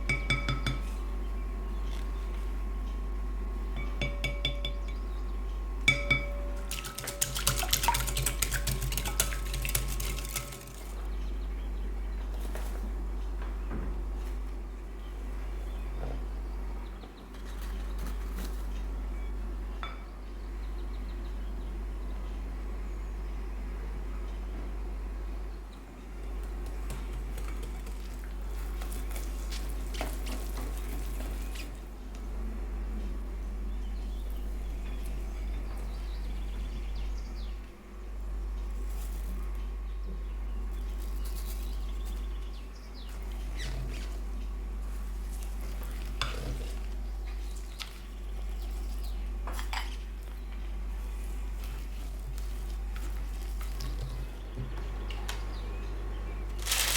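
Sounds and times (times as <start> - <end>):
utensil clinking against bowl: 0.0 - 1.0, 3.8 - 5.2, 5.8 - 11.0
steady low hum: 0.0 - 56.9
fast stirring in bowl: 5.9 - 11.1.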